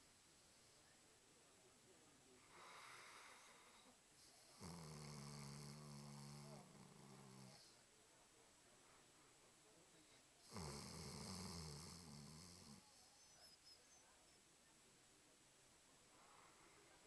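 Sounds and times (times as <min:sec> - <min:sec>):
dog snoring: 0:02.4 - 0:07.8, 0:10.4 - 0:13.5.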